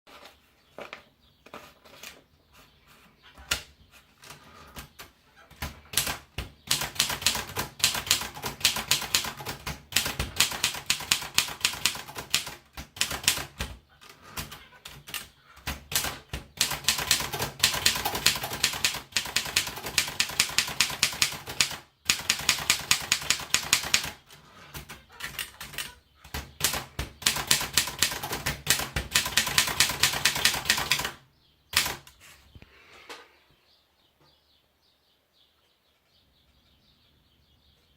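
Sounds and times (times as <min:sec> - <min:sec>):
typewriter keystrokes: 0:05.9 - 0:13.7, 0:14.3 - 0:24.2, 0:25.2 - 0:32.1.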